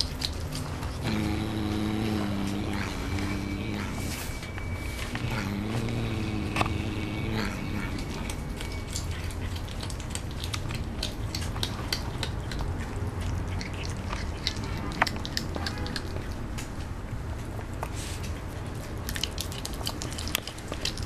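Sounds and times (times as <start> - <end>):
cat chewing meat: 0.0 - 21.0
cat humming low: 0.8 - 9.5.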